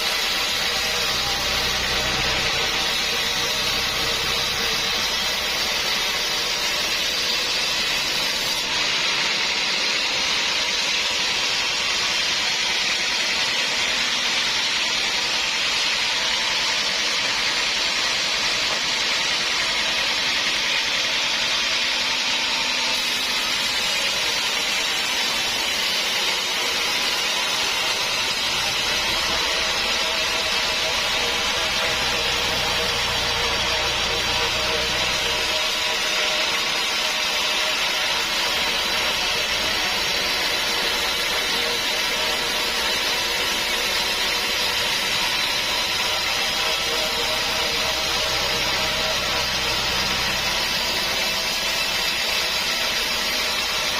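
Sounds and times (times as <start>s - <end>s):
saw cutting through log: 0.0s - 53.9s.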